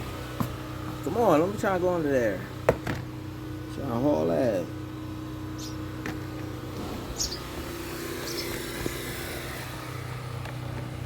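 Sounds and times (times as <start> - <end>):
low mechanical hum: 0.0 - 11.0
baby birds peeping: 5.5 - 5.9, 7.0 - 9.6.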